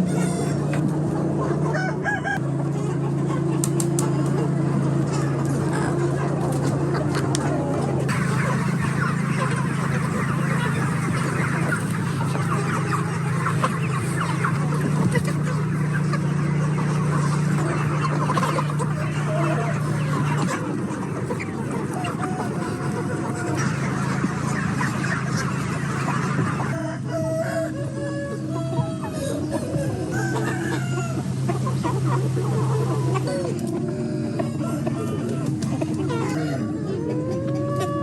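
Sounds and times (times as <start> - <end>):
chickens clucking: 0.0 - 38.0
steady low hum: 4.5 - 22.0.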